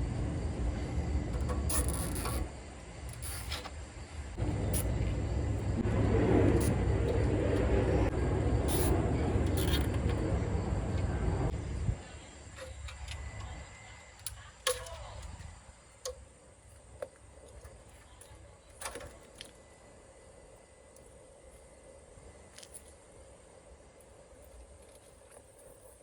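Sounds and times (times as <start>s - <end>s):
loud steady rumble: 0.0s - 13.9s.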